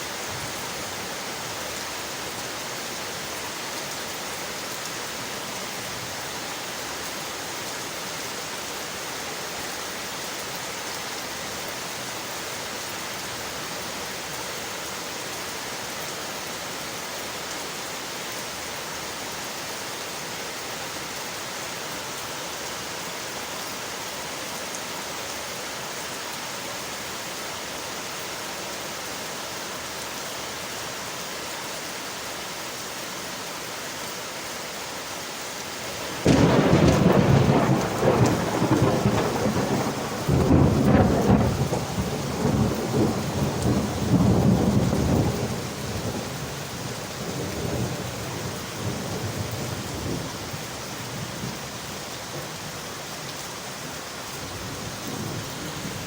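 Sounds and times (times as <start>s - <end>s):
rain on window glass: 35.9s - 53.6s
thunder clap rolling: 36.1s - 45.5s.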